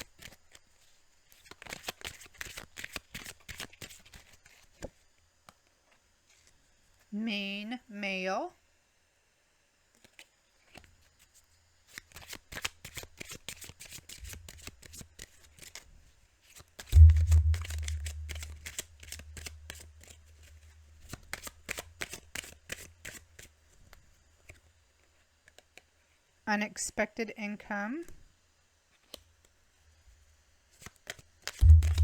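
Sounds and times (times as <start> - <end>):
cards being shuffled: 0.1 - 0.6, 1.3 - 4.9, 11.9 - 15.9, 16.5 - 24.6, 30.8 - 32.0
low thump: 17.0 - 19.7, 31.6 - 32.0.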